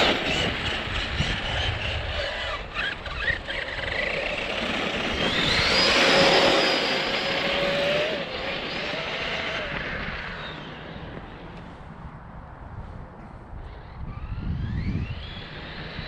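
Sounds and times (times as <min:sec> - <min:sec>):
rc car motor whining: 0:00.0 - 0:11.6
noisy rumble: 0:00.0 - 0:16.0.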